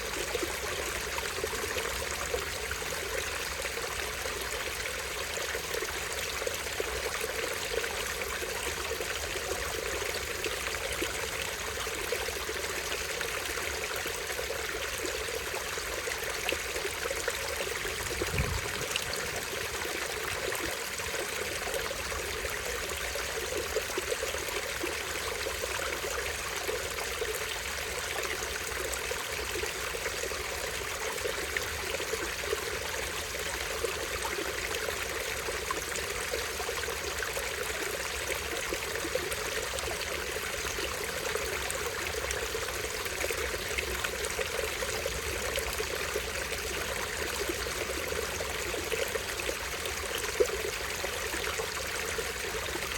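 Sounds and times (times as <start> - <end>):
stream splashing over a drop: 15.3 - 22.8.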